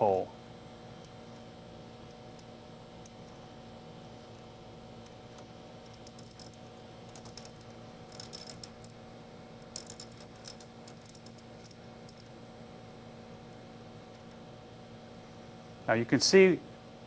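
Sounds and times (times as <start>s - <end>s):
steady hum: 0.0s - 17.0s
metallic clicking and rattling: 5.0s - 9.0s, 9.6s - 12.3s.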